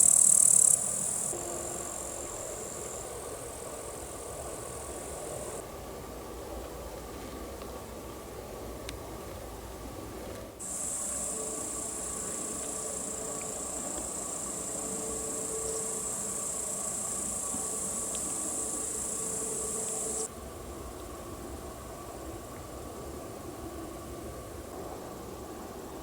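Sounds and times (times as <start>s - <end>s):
crickets trilling: 0.0s - 5.6s, 10.6s - 20.3s.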